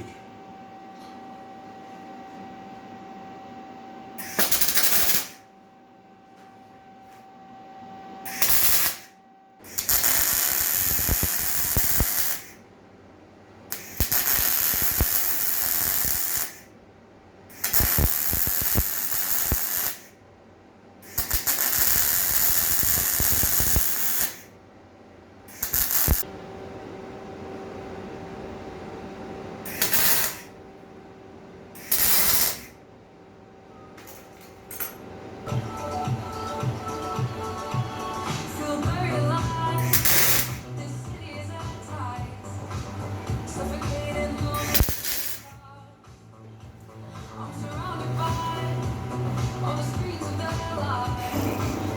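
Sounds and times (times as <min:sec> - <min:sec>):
electric welding arc crackling: 0:04.2 - 0:05.4, 0:08.3 - 0:09.1, 0:09.7 - 0:12.6, 0:13.7 - 0:16.7, 0:17.6 - 0:20.2, 0:21.1 - 0:24.5, 0:25.5 - 0:26.2, 0:29.7 - 0:30.5, 0:31.8 - 0:32.8, 0:39.7 - 0:40.7, 0:44.4 - 0:45.5.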